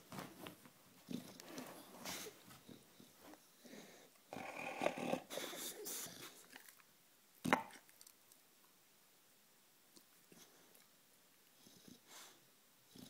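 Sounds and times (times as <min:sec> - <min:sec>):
dog snuffling breaths: 0:01.1 - 0:04.1, 0:05.1 - 0:06.5
dog snoring: 0:02.7 - 0:06.2.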